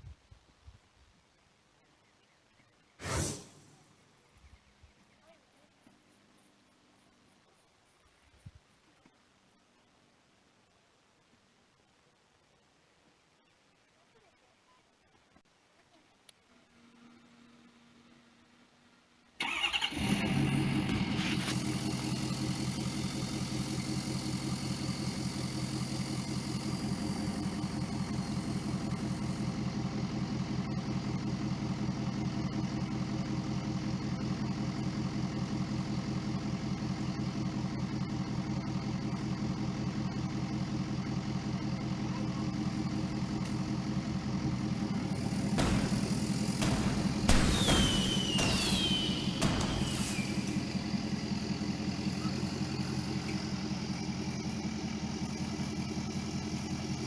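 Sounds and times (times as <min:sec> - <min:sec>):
engine starting and idling: 0:19.4 - 0:57.0.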